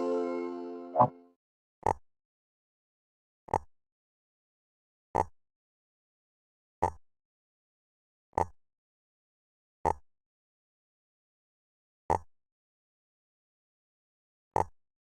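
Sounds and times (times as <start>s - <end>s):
chiming music: 0.0s - 1.0s.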